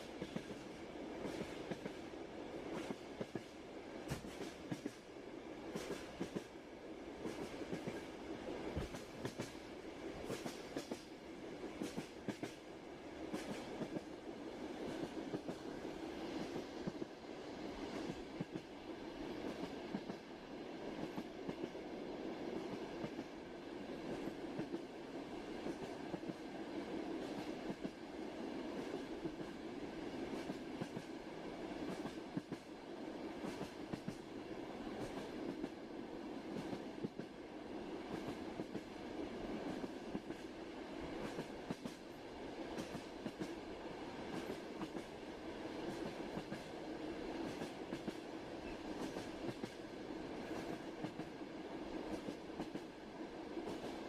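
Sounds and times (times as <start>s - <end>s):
train rumbling on rails: 0.0s - 54.0s.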